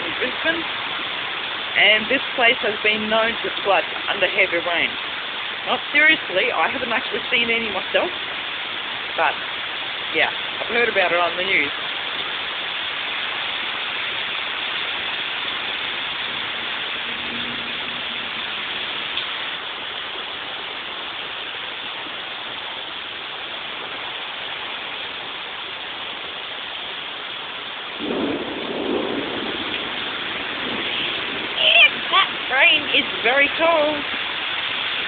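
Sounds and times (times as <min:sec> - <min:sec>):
torrential rain: 0:00.0 - 0:35.0
low rumble: 0:16.2 - 0:19.4.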